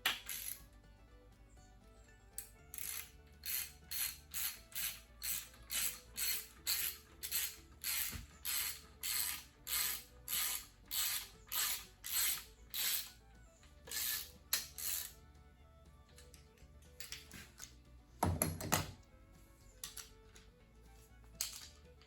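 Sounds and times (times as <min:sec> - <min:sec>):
ratchet wrench clicking: 0:00.0 - 0:00.6, 0:02.4 - 0:13.2, 0:13.9 - 0:15.2, 0:19.8 - 0:20.2, 0:21.4 - 0:21.8.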